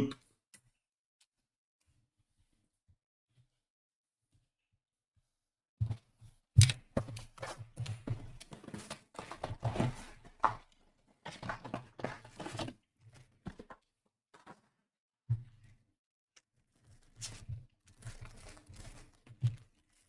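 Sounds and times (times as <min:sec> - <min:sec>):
packaging rustling and tearing: 0:16.9 - 0:20.0.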